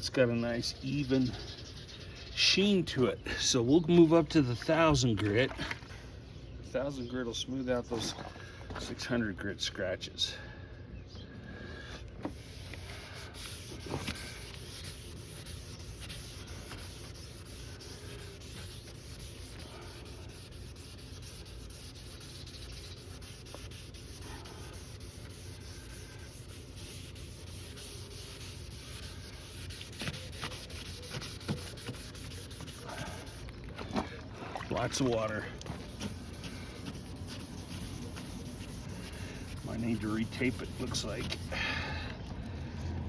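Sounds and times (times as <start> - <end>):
sandpaper rubbing on plastic: 12.2 - 33.5, 35.0 - 41.6.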